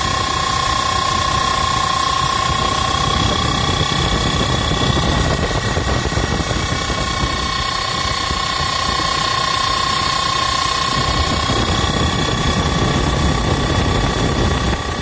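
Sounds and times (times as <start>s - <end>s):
belt-driven blower whining: 0.0s - 15.0s.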